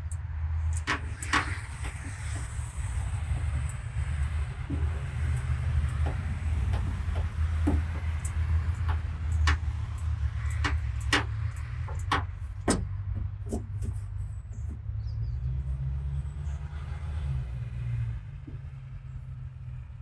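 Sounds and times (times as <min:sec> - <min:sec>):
tools tapping car panel metal: 0:00.7 - 0:02.6, 0:03.3 - 0:14.8.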